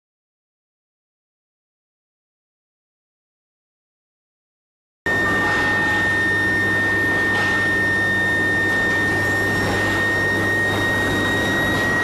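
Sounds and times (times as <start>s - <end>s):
high-pitched furnace whine: 5.1s - 12.0s
low electrical hum: 5.1s - 12.0s
machine noise: 5.1s - 12.0s.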